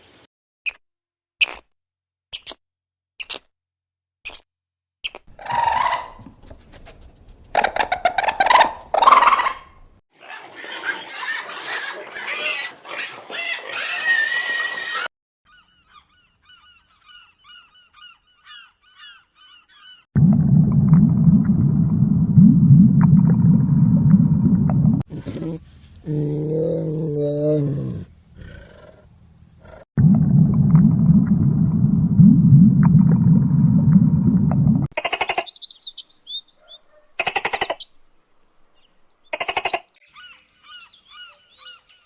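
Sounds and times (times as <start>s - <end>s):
waterfowl honking: 7.6s - 9.7s.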